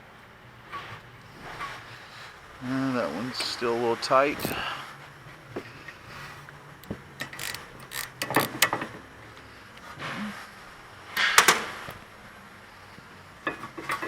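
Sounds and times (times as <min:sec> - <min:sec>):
ratchet clicking: 0:06.8 - 0:08.9.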